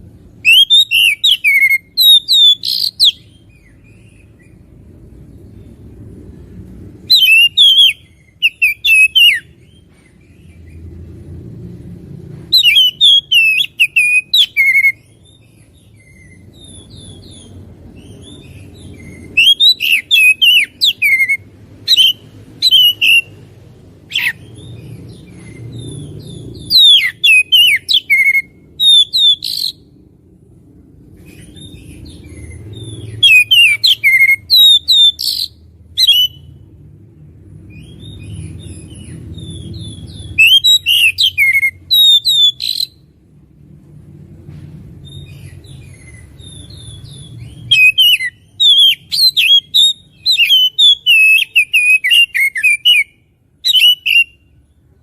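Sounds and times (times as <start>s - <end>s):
bird singing whistled phrases: 0.4s - 4.0s, 7.1s - 9.5s, 12.5s - 15.1s, 16.0s - 23.3s, 26.6s - 29.8s, 33.0s - 36.5s, 39.4s - 43.0s, 46.0s - 54.4s
faint low rumble: 3.1s - 7.3s.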